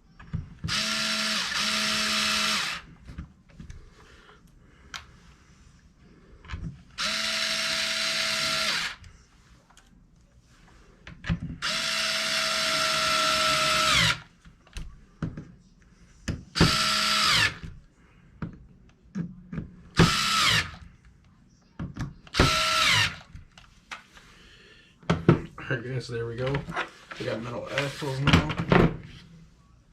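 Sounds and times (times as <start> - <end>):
power driver motor whine: 22.4 - 23.2.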